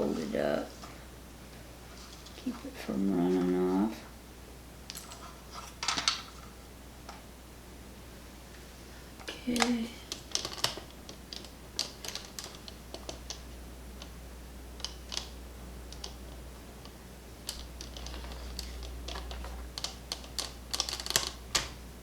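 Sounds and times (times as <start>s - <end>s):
small parts clicking on hard surface: 17.5s - 21.7s.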